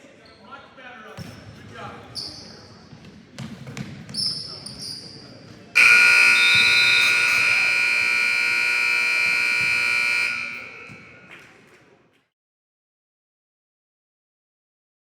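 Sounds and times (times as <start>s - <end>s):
scoreboard buzzer blast: 5.8s - 11.3s.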